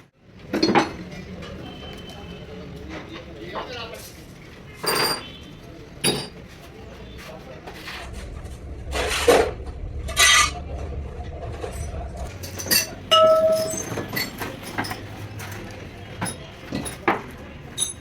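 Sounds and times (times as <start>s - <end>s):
metal tools clinking on workbench: 4.8s - 5.4s, 17.8s - 18.0s
metal ringing clang: 12.4s - 14.4s.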